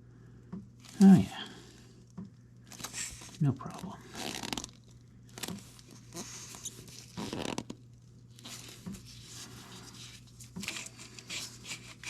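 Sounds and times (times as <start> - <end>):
hands scraping and rustling: 2.7 - 7.8, 8.4 - 12.0.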